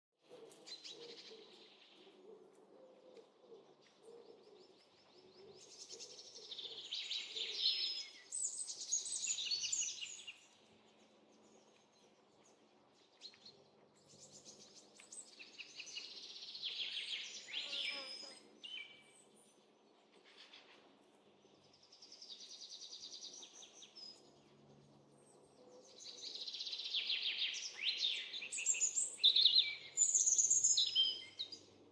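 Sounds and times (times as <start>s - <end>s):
birds singing with trills: 25.1s - 31.8s.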